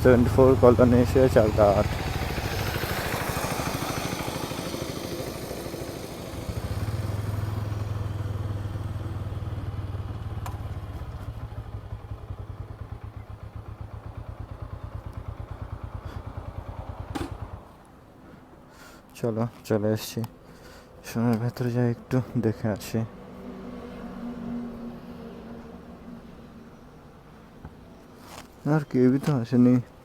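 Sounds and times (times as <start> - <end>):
motorcycle engine running: 0.0 - 17.8.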